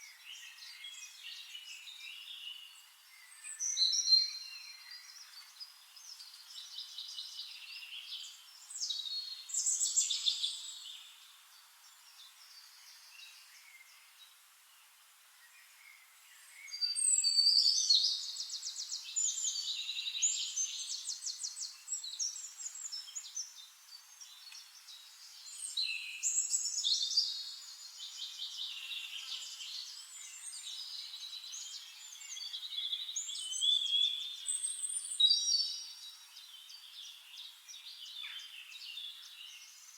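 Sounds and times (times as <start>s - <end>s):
birds trilling song: 0.0s - 14.4s, 15.4s - 39.9s.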